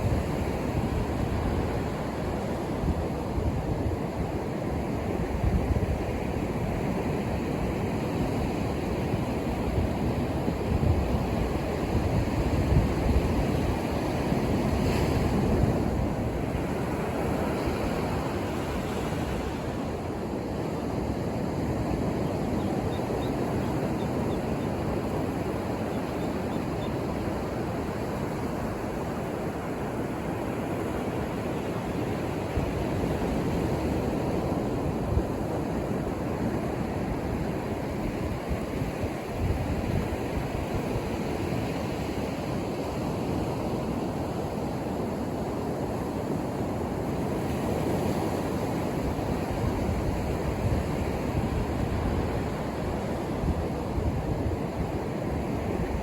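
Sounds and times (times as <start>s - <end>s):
waves breaking: 13.6s - 37.3s.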